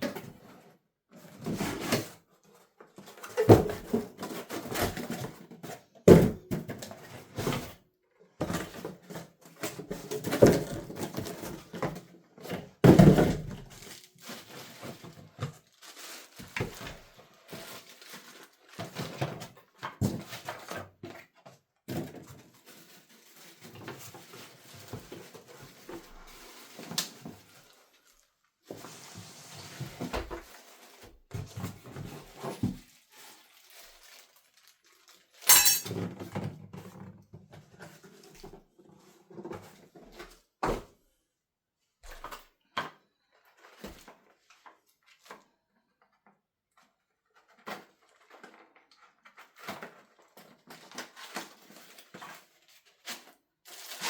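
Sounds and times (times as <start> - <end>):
cardboard packaging rustling: 13.4 - 19.8, 22.1 - 35.5, 47.4 - 54.0
knocks and thuds of handled parts: 35.5 - 36.0.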